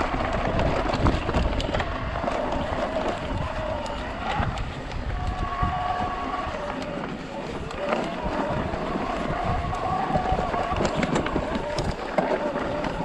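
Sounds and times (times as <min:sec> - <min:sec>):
tyres on rough trail: 0:00.0 - 0:13.0
wind noise on microphone: 0:00.0 - 0:13.0.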